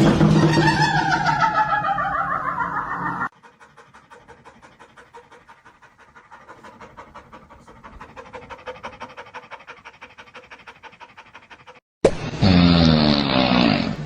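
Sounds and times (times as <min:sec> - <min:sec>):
dog panting rapidly: 0:03.3 - 0:11.9.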